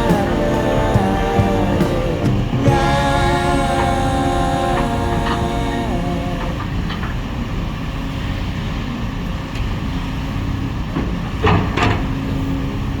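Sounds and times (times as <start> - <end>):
excavator engine rumbling: 0.0 - 7.4.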